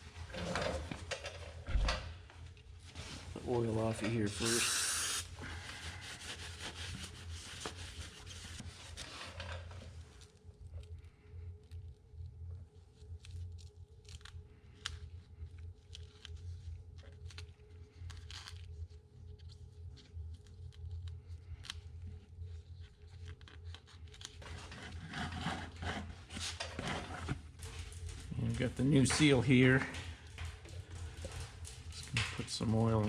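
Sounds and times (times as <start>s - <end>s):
steady low hum: 0.0s - 33.0s
small clicks and crackles: 8.9s - 25.8s, 27.2s - 33.0s.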